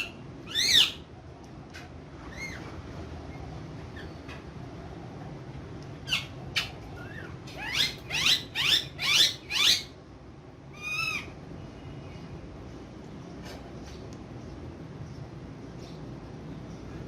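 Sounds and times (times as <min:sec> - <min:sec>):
parrot squawking: 0:00.0 - 0:01.1, 0:02.2 - 0:02.8, 0:06.0 - 0:10.0, 0:10.7 - 0:11.4.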